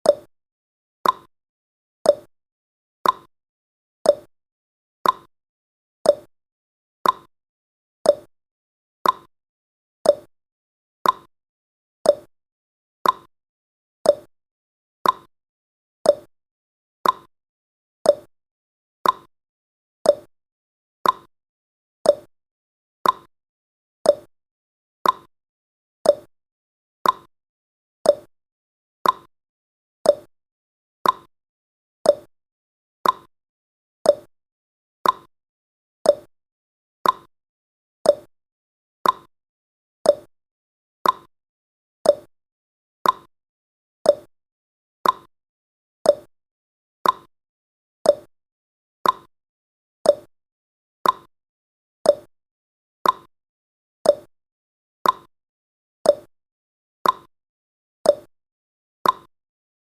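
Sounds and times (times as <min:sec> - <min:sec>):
clock ticking: 0:33.0 - 0:33.3, 0:39.0 - 0:39.3, 0:49.0 - 0:49.3, 0:57.0 - 0:57.3.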